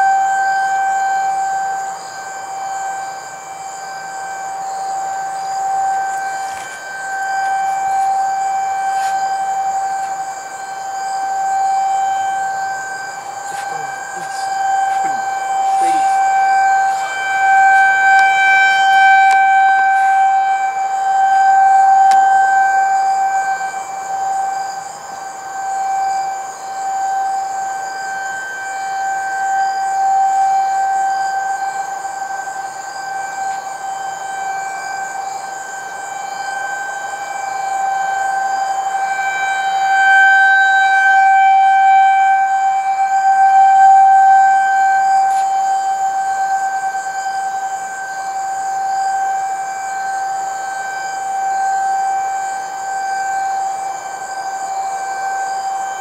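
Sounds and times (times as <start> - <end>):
tornado warning siren: 0.0 - 56.0.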